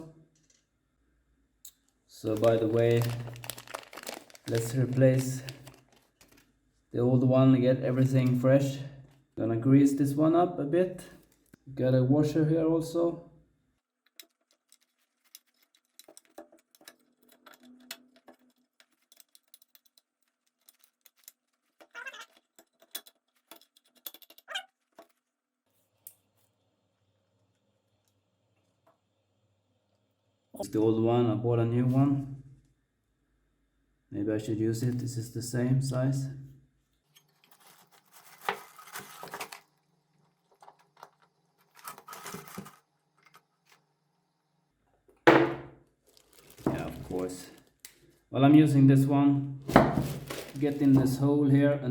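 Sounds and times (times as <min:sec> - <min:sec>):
rustling of packaging: 0:02.1 - 0:06.6, 0:14.1 - 0:24.0, 0:37.2 - 0:43.9, 0:46.0 - 0:48.3, 0:49.6 - 0:51.3
small metal parts clicking: 0:14.0 - 0:25.2
scraping rustle: 0:37.2 - 0:39.8, 0:40.4 - 0:42.9.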